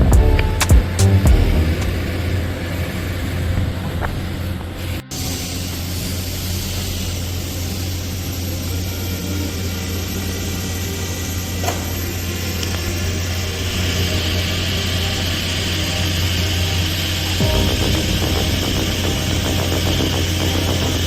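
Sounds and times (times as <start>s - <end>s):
welding arc hiss: 4.8s - 21.0s.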